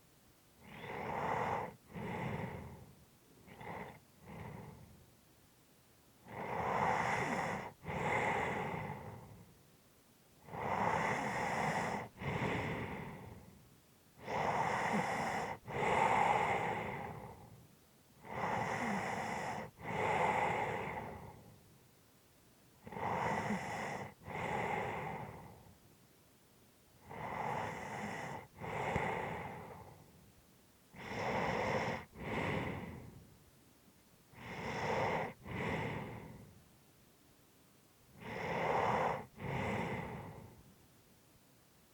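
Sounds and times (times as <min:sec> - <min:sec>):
person breathing heavily: 0:00.6 - 0:02.9, 0:10.6 - 0:13.6, 0:27.1 - 0:30.2, 0:31.0 - 0:33.3, 0:34.4 - 0:36.6, 0:38.2 - 0:40.6.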